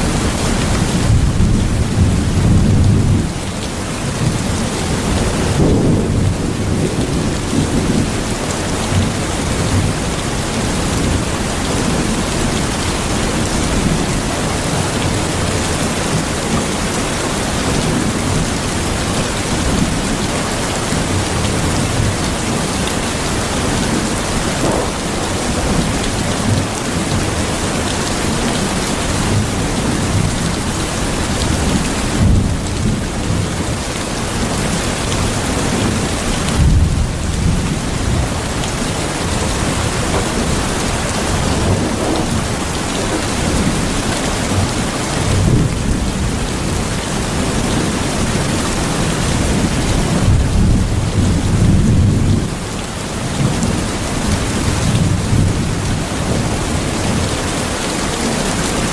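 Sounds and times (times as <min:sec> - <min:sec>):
heavy rain: 0:00.0 - 0:58.9
thunder rumbling: 0:04.1 - 0:10.1, 0:20.9 - 0:28.4, 0:29.3 - 0:52.6.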